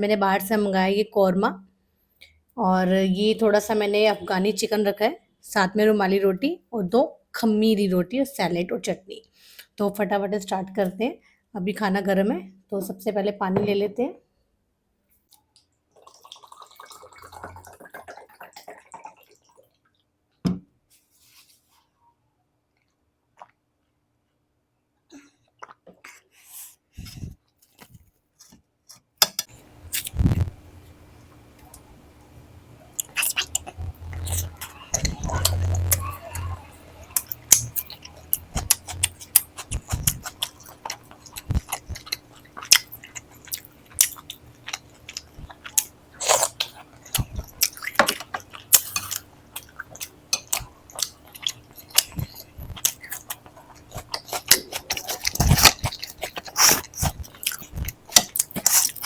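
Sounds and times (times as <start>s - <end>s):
person chewing food: 27.0s - 59.0s.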